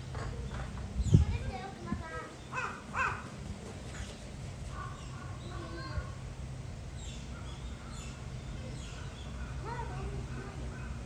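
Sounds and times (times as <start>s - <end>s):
low steady background hum: 0.0s - 11.0s
birds calling: 2.3s - 3.4s.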